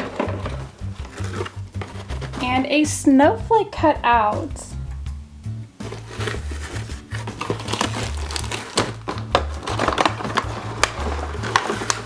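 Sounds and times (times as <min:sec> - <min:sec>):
plastic packaging crinkling: 0:00.0 - 0:02.7, 0:05.8 - 0:12.0
background music with bass line: 0:00.0 - 0:12.0.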